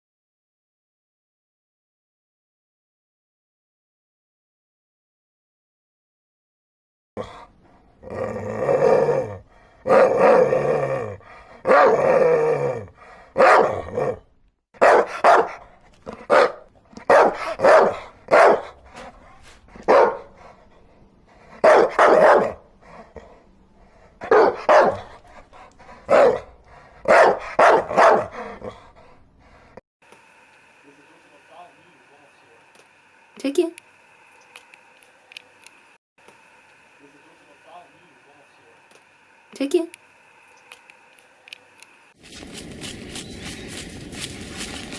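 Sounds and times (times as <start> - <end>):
dogs barking: 11.6 - 12.1, 13.4 - 14.2, 14.8 - 18.8, 19.8 - 20.4, 21.6 - 22.7, 24.2 - 25.4, 26.0 - 28.8.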